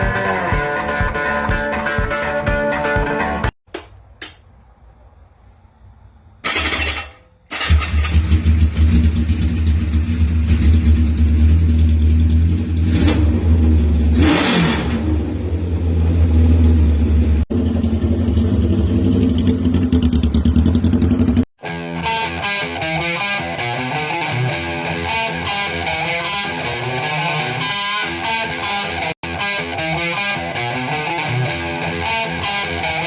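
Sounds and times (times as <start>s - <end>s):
guitar music: 0.0s - 3.5s, 21.6s - 33.0s
motorcycle engine running loudly: 6.5s - 21.5s.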